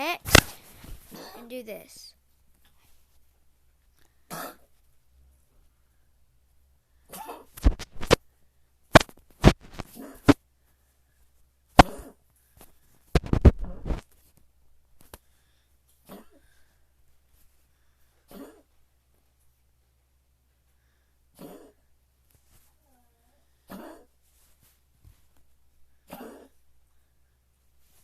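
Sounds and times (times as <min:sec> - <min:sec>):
person coughing: 0:01.1 - 0:01.5, 0:04.3 - 0:04.6.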